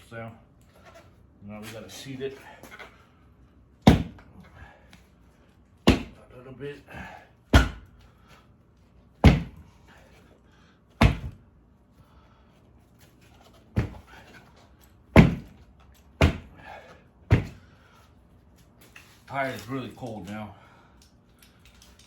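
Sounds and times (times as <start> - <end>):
heavy thuds on tire: 3.8 - 4.3, 5.8 - 6.3, 7.5 - 8.0, 9.2 - 9.8, 11.0 - 11.5, 13.8 - 14.2, 15.1 - 15.6, 16.2 - 17.8.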